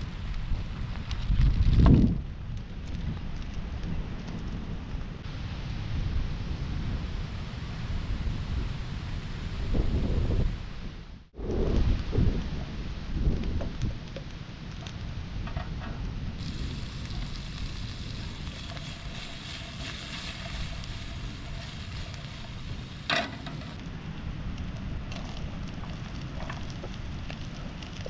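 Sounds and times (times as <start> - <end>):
wood fire crackling: 0.0 - 9.8, 10.6 - 28.0
wind rumbling on microphone: 0.0 - 28.0.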